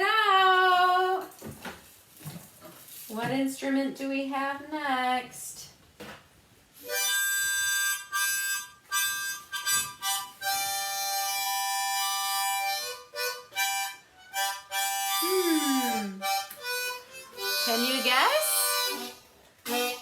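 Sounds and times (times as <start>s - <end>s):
harmonica chords and notes: 6.8s - 20.0s.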